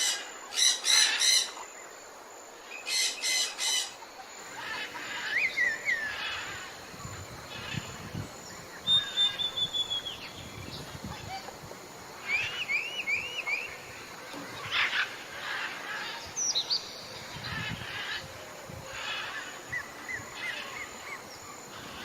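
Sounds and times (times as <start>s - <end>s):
bird calls: 2.8s - 22.0s
thin high bird whistle: 8.8s - 10.4s.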